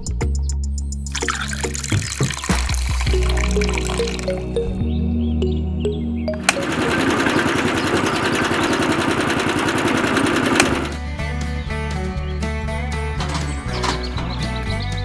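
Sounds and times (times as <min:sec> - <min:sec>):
background music: 0:00.0 - 0:07.6, 0:09.8 - 0:15.0
small machine clattering: 0:06.4 - 0:11.0, 0:13.1 - 0:14.8.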